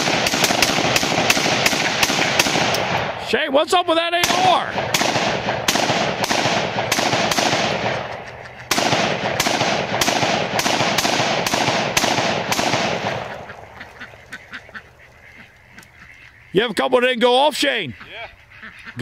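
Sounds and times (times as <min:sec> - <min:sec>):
rifle fire: 0:00.0 - 0:03.3, 0:04.2 - 0:13.8.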